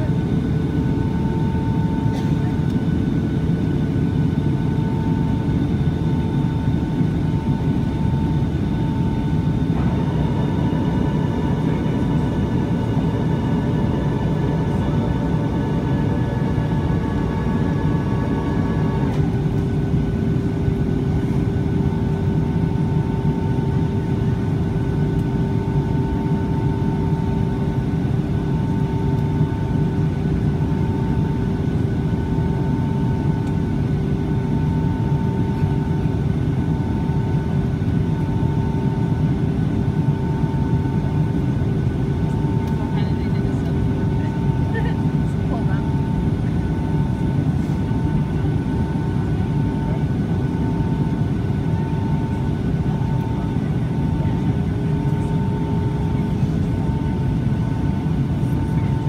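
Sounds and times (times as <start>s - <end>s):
jet engine cabin rumble: 0.0s - 59.0s.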